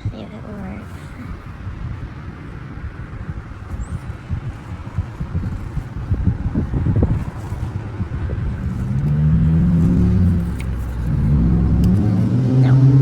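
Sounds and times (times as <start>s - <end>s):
rough rustling noise: 0.0s - 12.4s
engine running: 4.0s - 13.0s.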